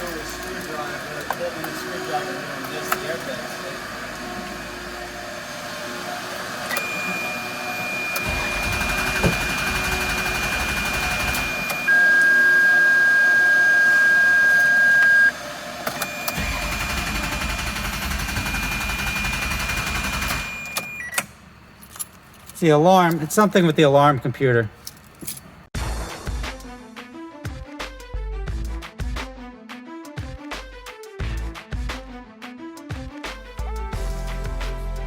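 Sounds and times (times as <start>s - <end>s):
car alarm electronic tone: 6.7s - 21.2s.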